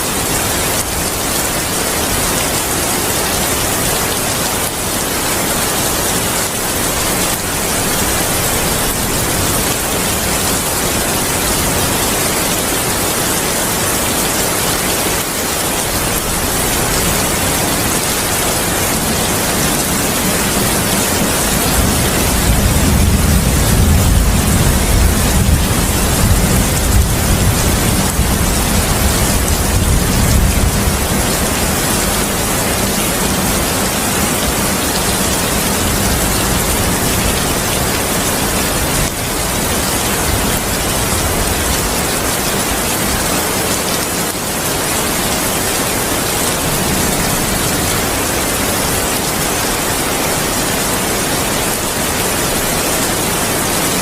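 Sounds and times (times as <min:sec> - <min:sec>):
heavy rain: 0:00.0 - 0:54.0
deep rolling thunder: 0:21.4 - 0:32.2.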